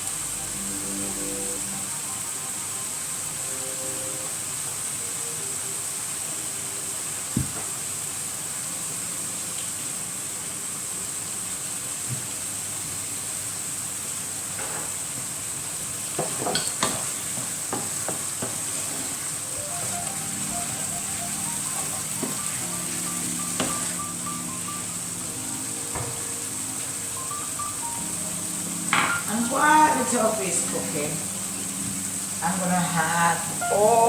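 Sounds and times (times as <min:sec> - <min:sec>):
tofu sizzling in a frying pan: 0:14.1 - 0:34.0.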